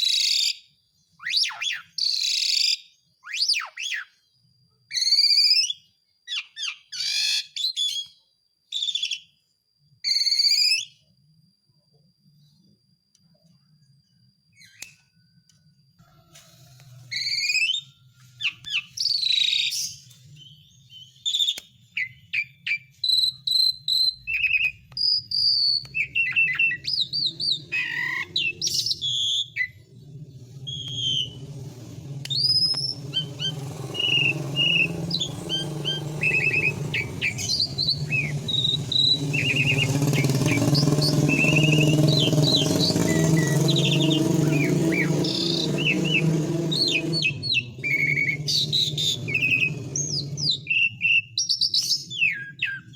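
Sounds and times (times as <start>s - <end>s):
starling singing: 17.1s - 52.9s.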